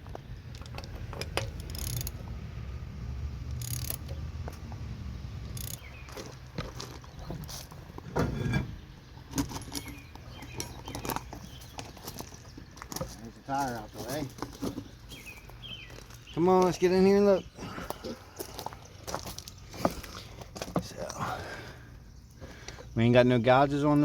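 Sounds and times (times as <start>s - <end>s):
lug nuts clattering: 0.0s - 2.4s, 3.4s - 4.6s, 5.4s - 16.3s
steady low rumble: 0.0s - 9.1s
metallic clicks and clinks: 0.5s - 2.2s, 3.5s - 4.2s, 5.4s - 6.3s.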